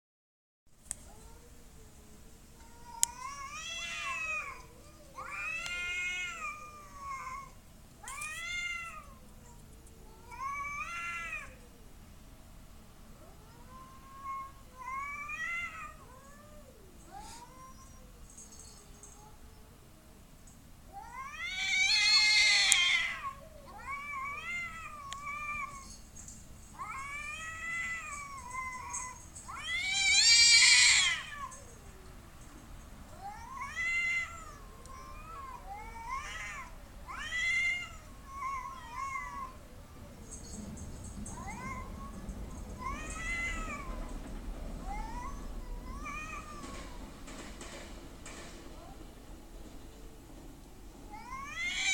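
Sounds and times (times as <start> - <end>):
cats yowling: 2.6 - 11.9, 13.2 - 19.8, 20.9 - 32.1, 33.1 - 47.2, 51.0 - 51.9
cat screaming: 21.0 - 26.0, 26.8 - 31.7, 51.1 - 51.9.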